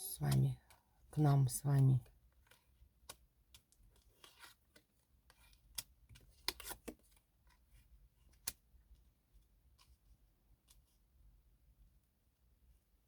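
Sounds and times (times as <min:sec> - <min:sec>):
cards tapping and rustling: 0:02.1 - 0:07.6.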